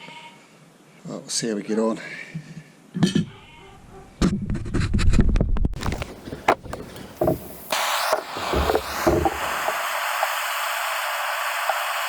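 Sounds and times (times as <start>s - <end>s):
heating tool hissing: 6.2s - 12.0s.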